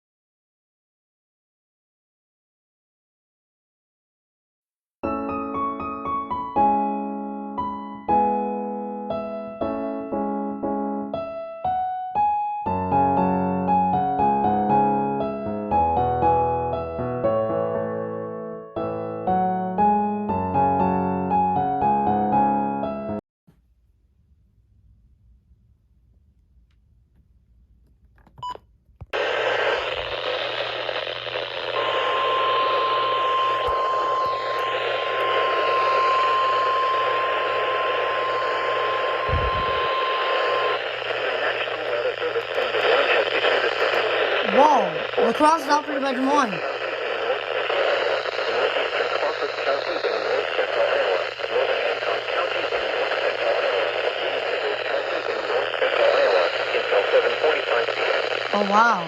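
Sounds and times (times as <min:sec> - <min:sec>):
low hum: 0:23.5 - 0:42.3
radio blip: 0:28.3 - 0:59.0
radio static hiss: 0:29.1 - 0:59.0
steady high alarm tone: 0:31.8 - 0:41.0
faint voice: 0:48.7 - 0:59.0.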